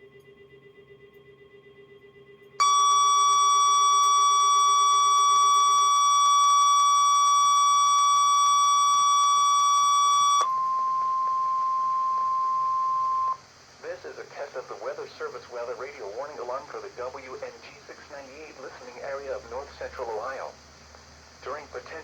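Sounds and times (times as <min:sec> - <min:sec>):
loud steady alarm beep: 0:02.6 - 0:13.4.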